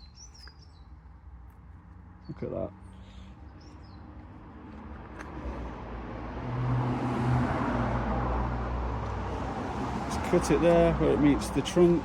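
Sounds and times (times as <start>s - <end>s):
vehicle passing by: 4.4s - 12.0s.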